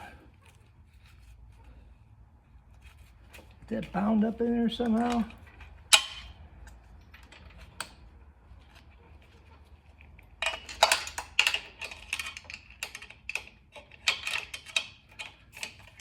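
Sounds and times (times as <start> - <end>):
metal chain clicking and rattling: 9.2 - 16.0.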